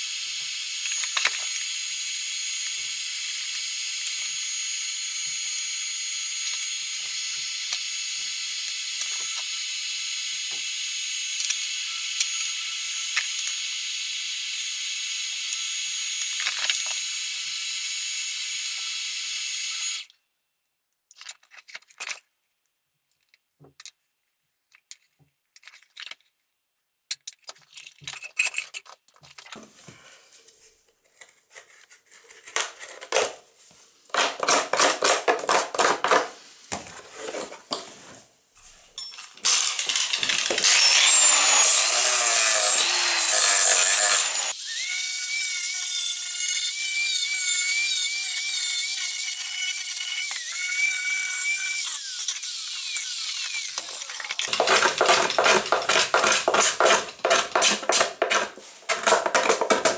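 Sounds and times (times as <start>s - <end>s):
power tool whining: 39.4s - 56.2s.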